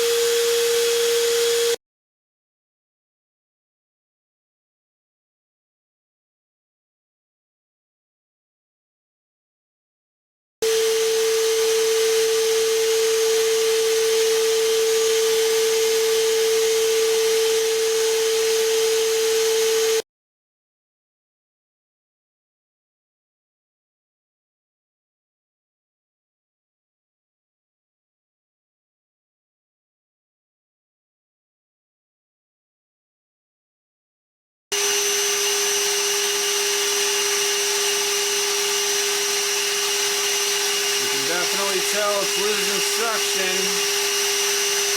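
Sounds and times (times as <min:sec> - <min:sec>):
vacuum motor whine: 0:00.0 - 0:01.8, 0:10.6 - 0:20.0, 0:34.8 - 0:44.9.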